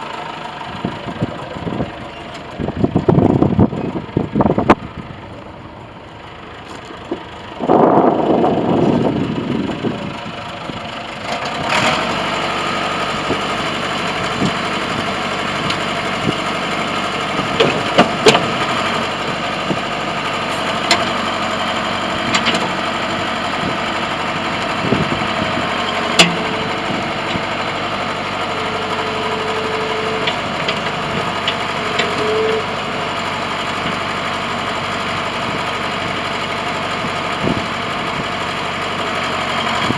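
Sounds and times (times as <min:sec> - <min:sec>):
diesel engine idling: 0:00.0 - 0:39.9
loud rough engine burst: 0:07.6 - 0:10.3.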